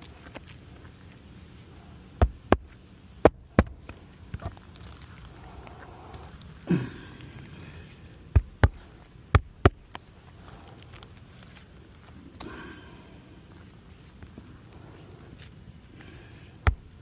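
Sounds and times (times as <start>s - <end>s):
scraping rustle: 3.8s - 6.7s, 9.8s - 12.4s.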